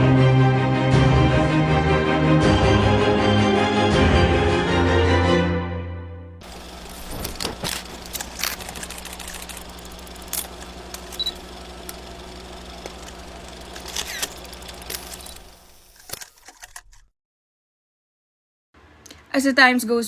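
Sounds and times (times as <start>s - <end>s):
low mechanical hum: 6.4s - 17.0s.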